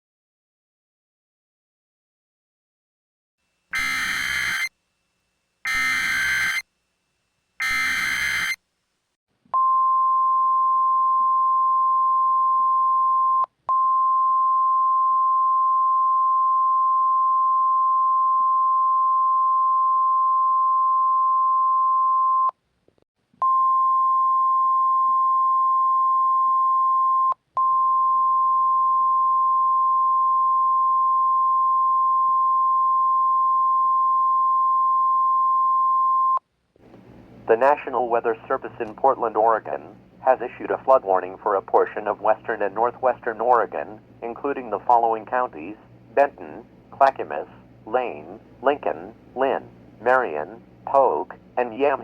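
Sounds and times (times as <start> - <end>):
screeching data bursts: 3.7 - 4.7, 5.7 - 6.6, 7.6 - 8.6
steady warning alarm tone: 3.7 - 4.7, 5.6 - 6.6, 7.6 - 8.6.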